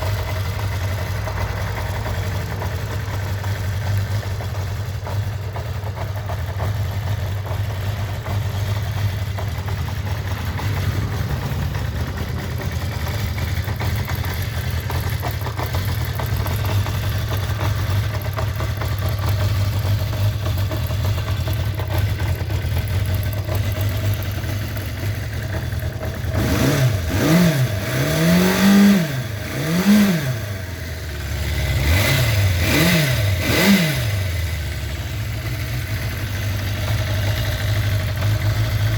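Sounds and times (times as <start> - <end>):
motorcycle engine idling: 0.0 - 38.9
engine revving: 10.1 - 17.8, 26.0 - 36.0.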